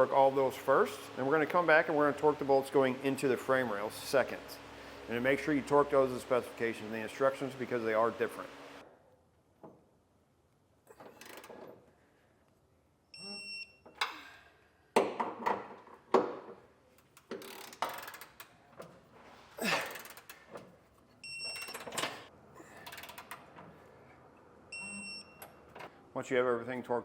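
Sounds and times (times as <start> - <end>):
wrench ratcheting: 11.1 - 11.6, 17.1 - 18.6, 19.8 - 20.5, 22.7 - 23.5.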